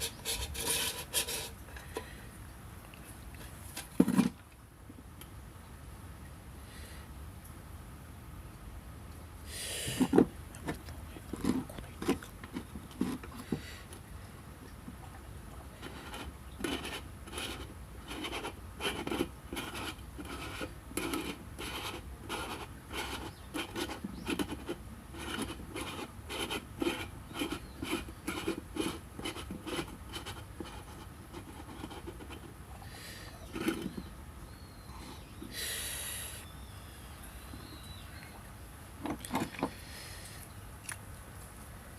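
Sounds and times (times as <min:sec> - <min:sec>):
hand tool rasping strokes: 0:00.0 - 0:01.5.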